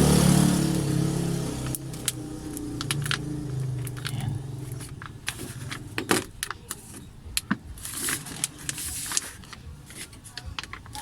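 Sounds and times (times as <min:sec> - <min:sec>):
scraping rub: 0:07.8 - 0:10.4.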